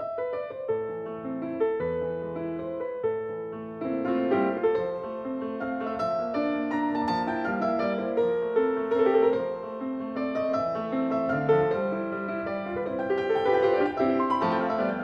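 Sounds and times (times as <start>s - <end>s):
gentle piano music: 0.0s - 15.0s.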